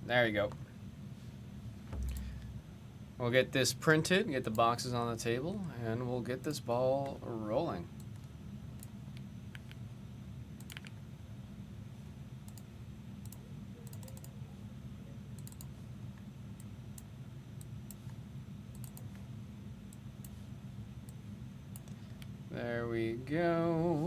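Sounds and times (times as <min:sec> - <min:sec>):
steady low hum: 0:00.0 - 0:24.0
keyboard and mouse clicks: 0:02.0 - 0:02.6, 0:10.6 - 0:11.0, 0:12.5 - 0:14.3.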